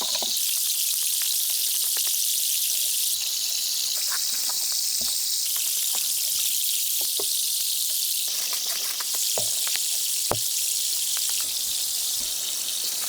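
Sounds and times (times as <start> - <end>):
wood fire crackling: 8.3 - 13.0.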